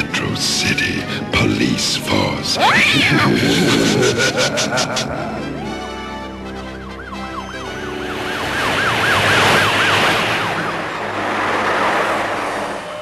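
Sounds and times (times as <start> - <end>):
passing vehicles: 5.1 - 13.0.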